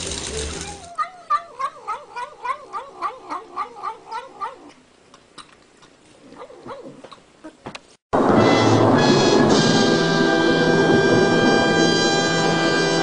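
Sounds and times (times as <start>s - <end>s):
cat giving wavering calls: 0.6s - 4.8s.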